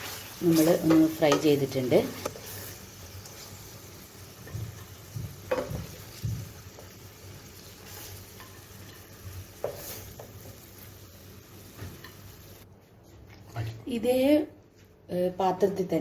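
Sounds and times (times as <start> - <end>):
chicken sizzling in hot oil: 0.0 - 12.6
knocks in the pan: 4.5 - 6.6.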